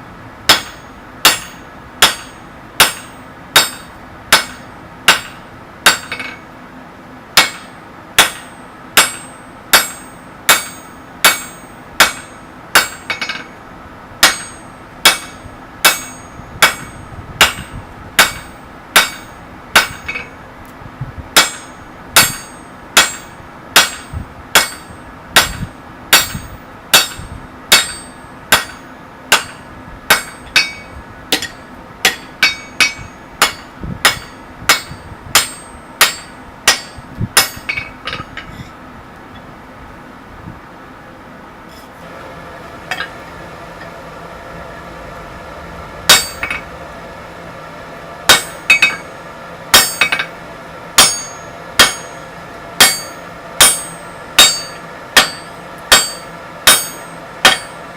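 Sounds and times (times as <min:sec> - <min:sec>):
hammer striking steel on anvil: 0:00.5 - 0:06.5, 0:07.4 - 0:13.6, 0:14.2 - 0:20.4, 0:21.4 - 0:38.7, 0:42.9 - 0:43.2, 0:46.1 - 0:46.7, 0:48.3 - 0:49.1, 0:49.7 - 0:50.4, 0:51.0 - 0:57.9.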